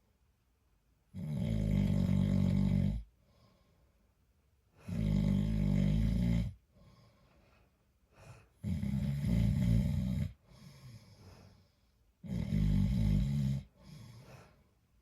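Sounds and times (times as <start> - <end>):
man snoring: 1.2 - 3.1, 4.8 - 6.6, 8.6 - 11.0, 12.2 - 14.2.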